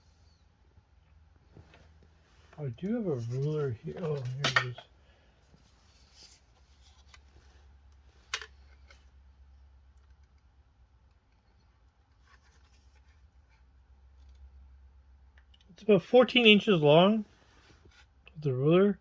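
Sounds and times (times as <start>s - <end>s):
handling plastic toy: 1.5s - 9.2s.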